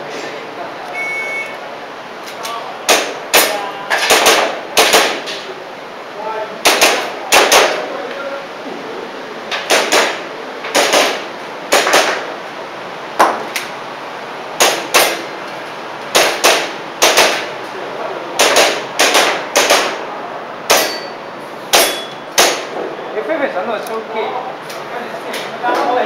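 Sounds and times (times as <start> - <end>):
airsoft pistol shots: 2.9 - 5.3, 6.6 - 7.8, 9.6 - 12.3, 14.6 - 15.2, 16.1 - 17.5, 18.4 - 20.0, 20.7 - 21.0, 21.7 - 22.8.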